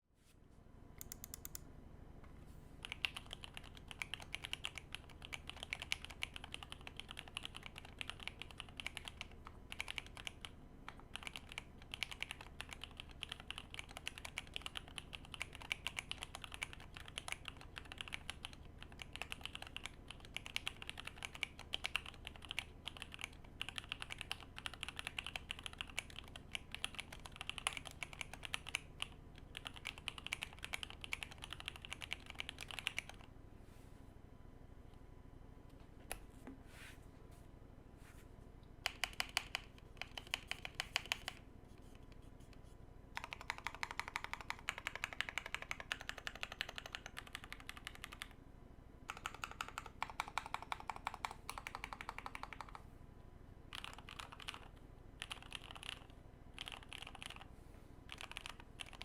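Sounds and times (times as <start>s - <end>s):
mechanical keyboard typing: 1.0s - 1.6s, 2.8s - 33.3s, 38.8s - 41.4s, 43.2s - 48.4s, 49.1s - 52.8s, 53.7s - 57.5s, 58.1s - 59.0s.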